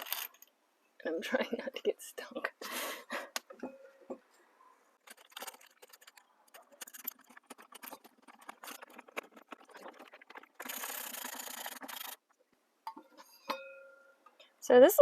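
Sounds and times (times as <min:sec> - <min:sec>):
steady rasping noise: 0:05.0 - 0:12.5
small clicks and scrapes: 0:05.0 - 0:13.6.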